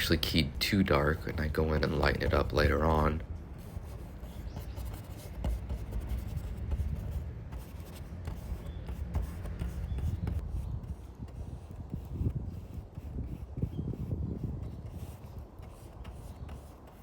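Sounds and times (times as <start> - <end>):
city background rumble: 0.0 - 12.0
brush scrubbing paint on canvas: 0.0 - 17.0.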